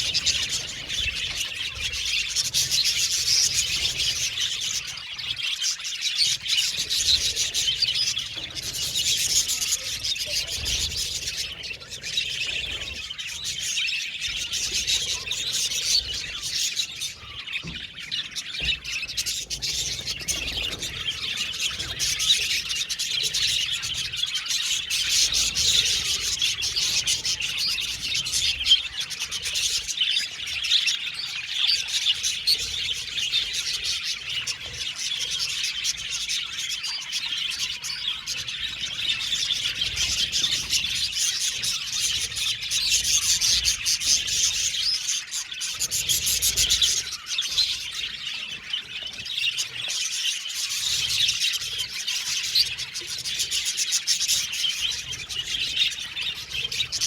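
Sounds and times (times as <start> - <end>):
budgerigars chattering and chirping: 0.0 - 57.0.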